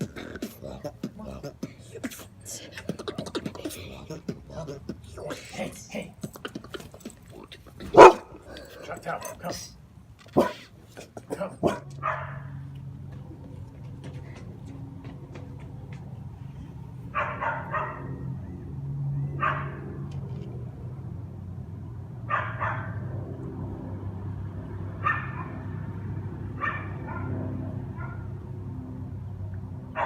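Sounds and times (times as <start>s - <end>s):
dog barking: 7.9s - 8.4s, 10.4s - 10.7s, 11.4s - 12.5s, 17.2s - 18.2s, 19.4s - 19.8s, 22.3s - 23.0s, 25.0s - 25.7s, 26.6s - 27.4s, 28.0s - 28.3s.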